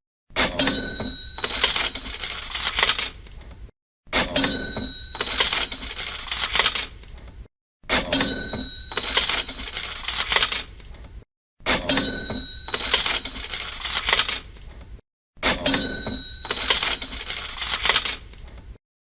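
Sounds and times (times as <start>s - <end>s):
cash register bell ding: 0.5s - 3.0s, 4.2s - 6.5s, 7.9s - 10.5s, 11.8s - 14.3s, 15.4s - 18.0s
coins jingling and clattering: 0.6s - 3.4s, 4.4s - 7.1s, 8.1s - 10.9s, 11.9s - 14.7s, 15.6s - 18.4s.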